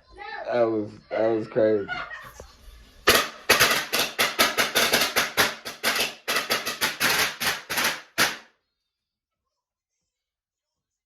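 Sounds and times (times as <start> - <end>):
firecrackers banging: 2.9 - 8.4.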